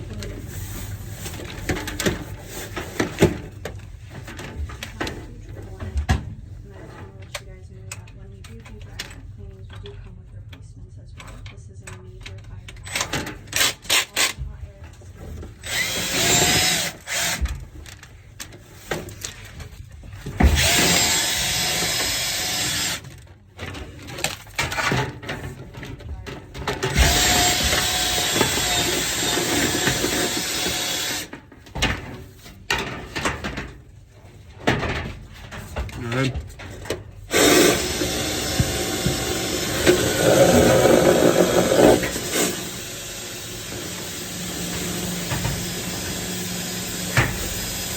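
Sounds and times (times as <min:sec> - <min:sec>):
power drill spinning brush: 0:15.6 - 0:17.4, 0:20.5 - 0:23.0, 0:26.9 - 0:31.3, 0:37.3 - 0:47.9
knocks and rattles in duct: 0:23.5 - 0:47.9.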